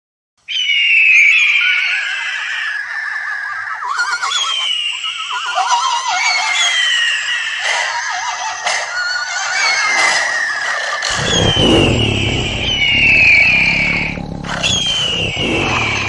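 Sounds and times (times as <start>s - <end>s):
eagle screeches: 11.1s - 16.0s
horse whinnies: 11.1s - 16.0s.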